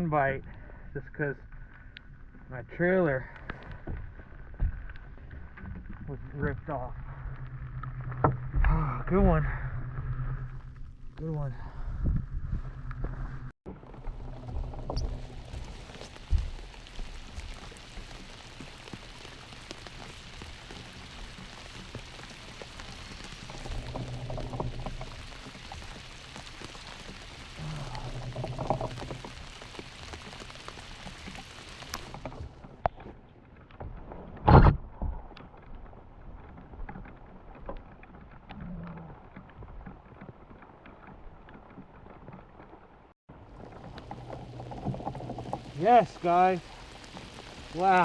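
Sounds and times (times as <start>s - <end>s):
heavy rain falling: 13.8s - 32.8s, 43.3s - 48.0s.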